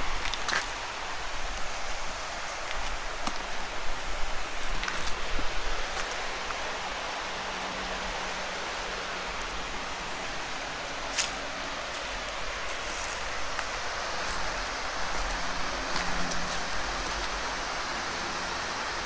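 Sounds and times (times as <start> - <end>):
mountain stream rushing: 0.0 - 19.0.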